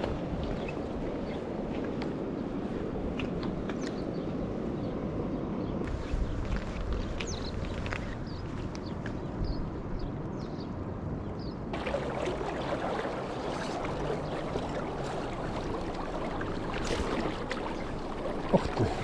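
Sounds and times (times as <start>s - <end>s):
wind on microphone: 0.0s - 19.0s
river water running: 11.7s - 19.0s.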